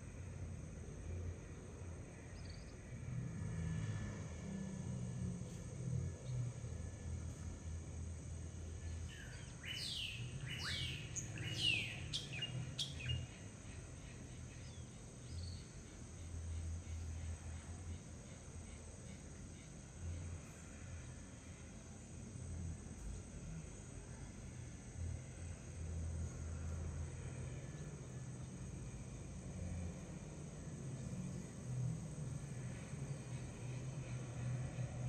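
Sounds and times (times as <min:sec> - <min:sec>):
insects droning: 0:00.0 - 0:35.0
bird chirping: 0:09.1 - 0:13.4.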